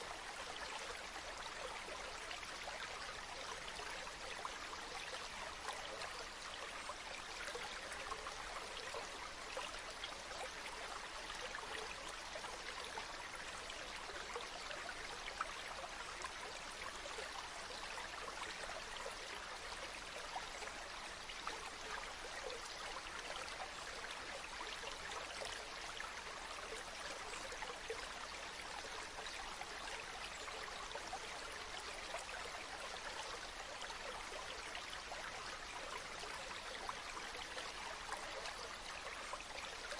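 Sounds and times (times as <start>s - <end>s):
stream water babbling: 0.0s - 39.9s.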